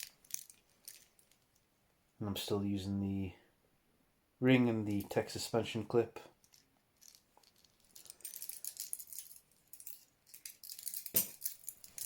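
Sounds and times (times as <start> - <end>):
keys jingling: 6.4 - 12.0.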